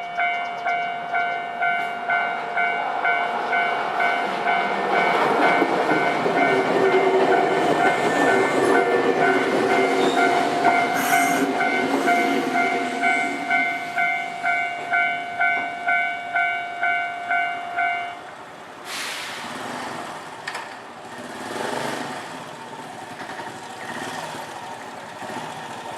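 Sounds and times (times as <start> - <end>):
level-crossing warning bell: 0.0 - 18.4
traffic noise: 0.0 - 25.9
train rumble and wheel clatter: 0.0 - 25.9.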